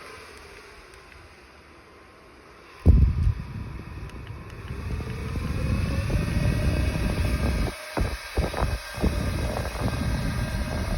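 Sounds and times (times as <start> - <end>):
fan motor whine: 0.0 - 10.9
airflow buffeting microphone: 2.6 - 10.9.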